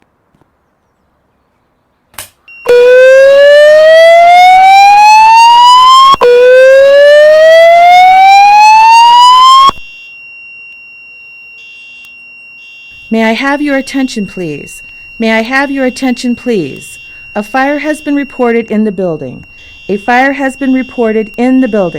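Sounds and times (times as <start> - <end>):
slow-whoop evacuation tone: 2.7 - 11.2
faint steady high tone: 9.8 - 21.9.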